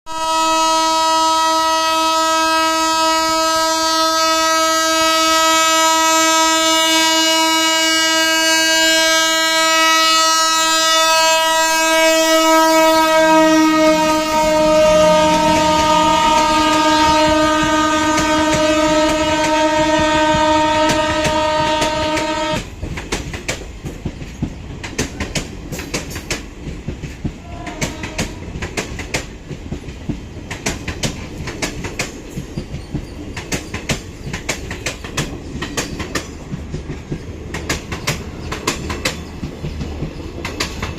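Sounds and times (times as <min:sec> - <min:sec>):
locomotive horn blast: 0:00.1 - 0:22.7, 0:27.4 - 0:28.5
train wheels clattering over rails: 0:11.2 - 0:40.9.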